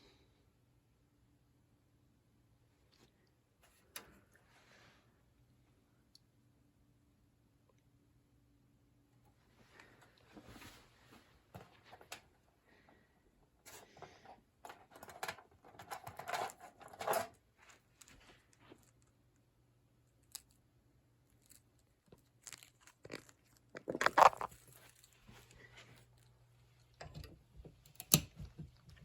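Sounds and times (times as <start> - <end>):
faint low hum: 0.0 - 29.0
handling clicks and rustling: 13.7 - 19.2, 21.4 - 29.0.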